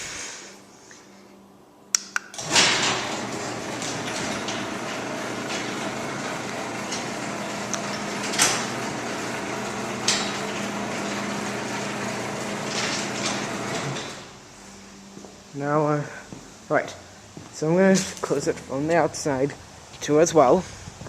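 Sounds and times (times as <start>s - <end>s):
garage door opener motor hum: 2.3s - 14.5s
door rollers rattling in tracks: 2.4s - 14.4s.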